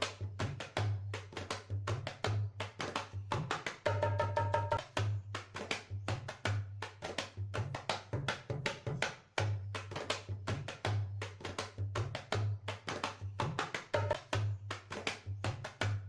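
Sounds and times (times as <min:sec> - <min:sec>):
fast hand-drum beat: 0:00.0 - 0:16.0.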